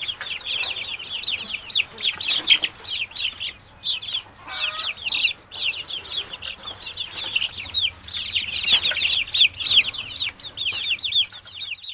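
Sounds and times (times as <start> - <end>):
chicks peeping: 0.0 - 11.9.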